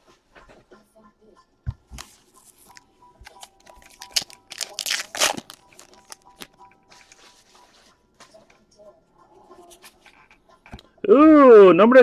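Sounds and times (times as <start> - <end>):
foil wrapper tearing and crinkling: 3.3 - 6.5.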